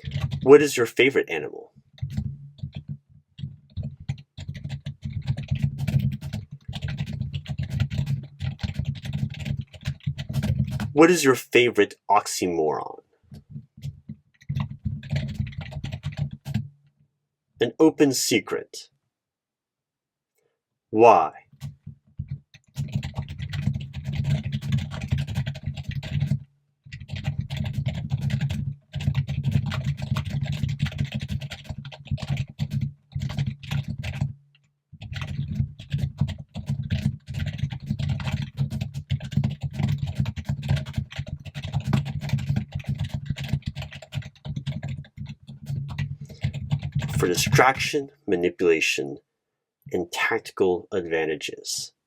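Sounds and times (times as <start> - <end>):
fast typing on keyboard: 0.0 - 0.8, 1.9 - 11.2, 13.3 - 16.7, 21.5 - 34.4, 35.0 - 47.8.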